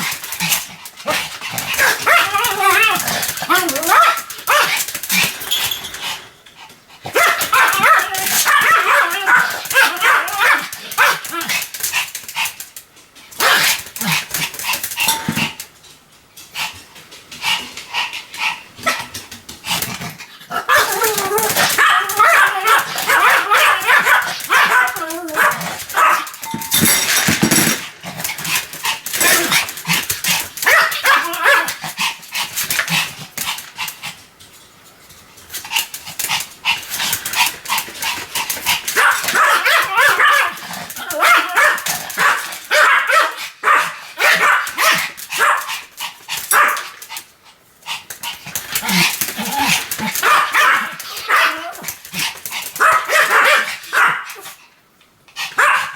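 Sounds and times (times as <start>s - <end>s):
small dog barking rapidly: 1.8s - 4.8s, 7.2s - 11.4s, 20.5s - 26.4s, 30.6s - 31.7s, 39.0s - 45.7s, 46.5s - 46.9s, 50.2s - 51.8s, 52.8s - 54.4s, 55.6s - 55.9s.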